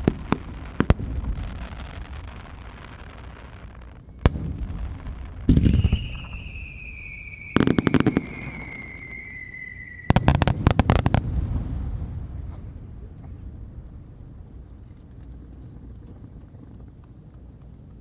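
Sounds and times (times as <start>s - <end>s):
fireworks bangs: 0.0s - 16.4s
firework whistle falling in pitch: 5.5s - 10.5s.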